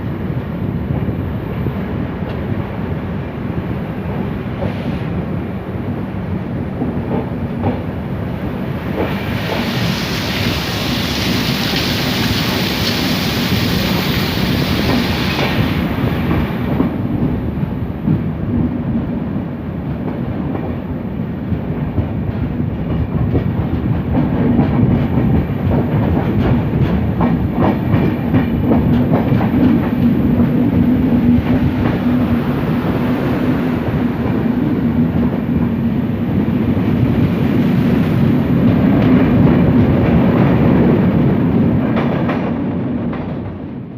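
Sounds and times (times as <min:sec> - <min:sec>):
clickety-clack of rail joints: 0:00.0 - 0:43.9
train wheels rumbling on rails: 0:00.0 - 0:43.9
high hiss: 0:09.0 - 0:16.6.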